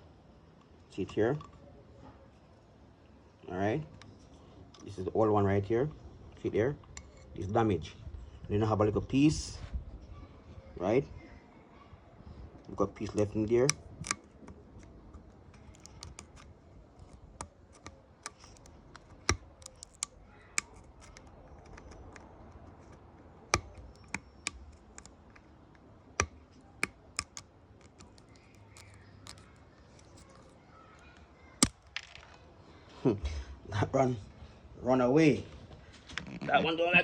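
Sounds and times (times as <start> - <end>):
hand tool clicking on circuit board: 15.6 - 25.4, 26.2 - 29.4.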